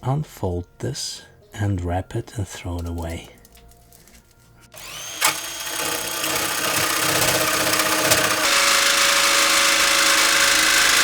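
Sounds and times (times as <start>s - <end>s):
power tool cutting steel panel: 4.8s - 11.0s.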